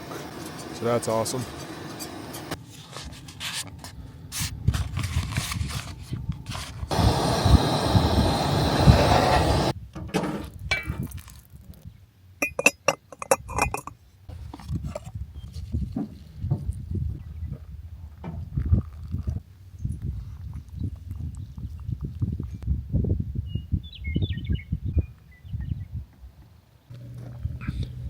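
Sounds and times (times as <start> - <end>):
loud steady hiss: 0.0 - 2.6, 6.9 - 9.8
dishes clinking and scraping: 12.4 - 14.0.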